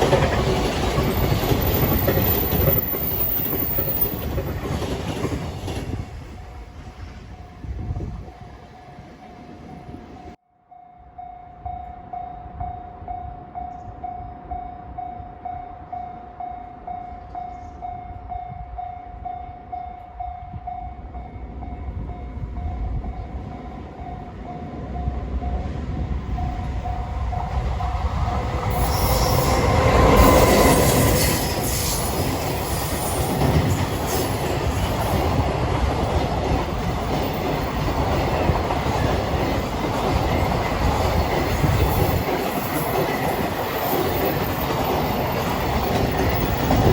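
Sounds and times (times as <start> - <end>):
wheels clattering over rail joints: 0.0 - 6.2
freight train passing: 0.0 - 10.4, 11.0 - 46.9.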